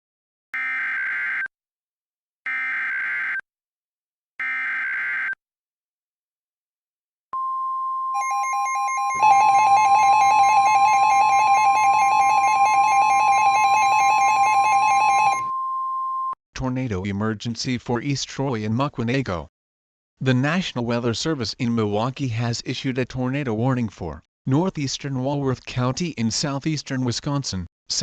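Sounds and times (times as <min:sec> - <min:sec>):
high attention tone: 0:07.4 - 0:15.7
harsh buzzing alarm tone: 0:08.2 - 0:15.5
screeching data tones: 0:08.2 - 0:15.5.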